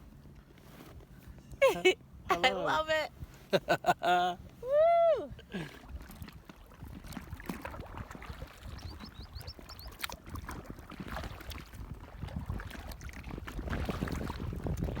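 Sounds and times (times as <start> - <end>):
paddle splashing water: 0.0 - 15.0
bird chirping: 8.8 - 10.0.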